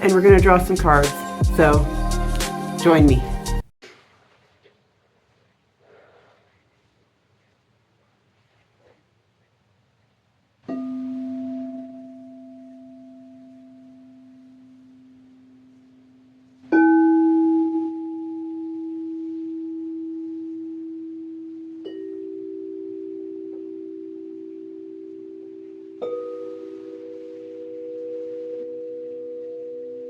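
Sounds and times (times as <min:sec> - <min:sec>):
crystal singing bowls ringing: 0:10.7 - 0:30.0.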